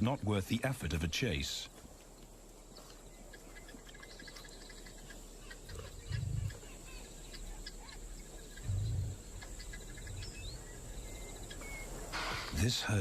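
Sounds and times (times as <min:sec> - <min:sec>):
insects whining: 0:00.0 - 0:13.0
bird chirps: 0:02.2 - 0:13.0.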